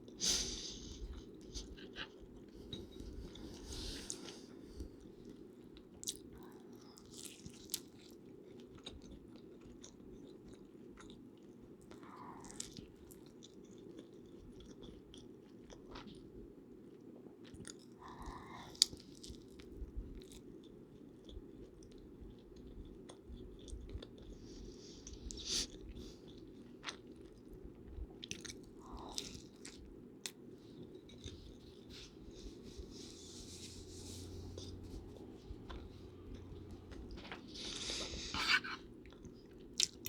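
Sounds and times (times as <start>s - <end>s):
low background noise: 0.0s - 40.0s
chewing and biting: 25.0s - 32.2s, 34.5s - 40.0s.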